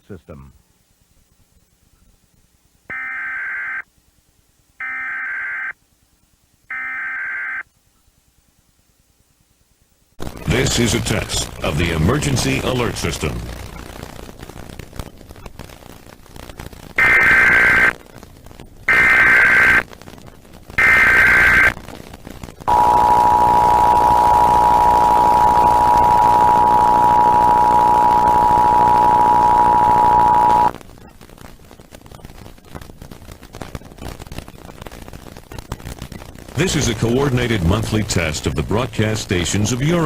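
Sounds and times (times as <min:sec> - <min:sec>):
warbling digital data bursts: 0:17.0 - 0:17.9, 0:18.9 - 0:19.8, 0:20.8 - 0:21.8, 0:22.7 - 0:30.8.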